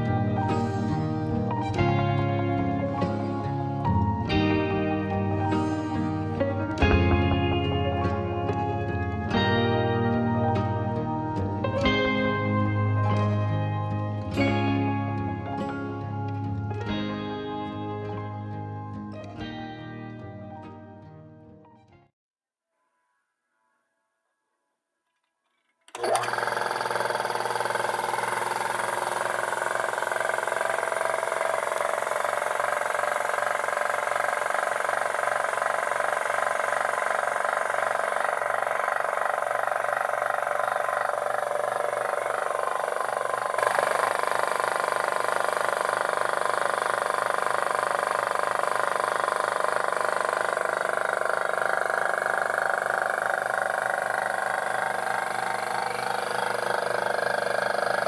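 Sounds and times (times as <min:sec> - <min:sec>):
air compressor running: 0:00.0 - 0:12.8, 0:25.9 - 0:58.0.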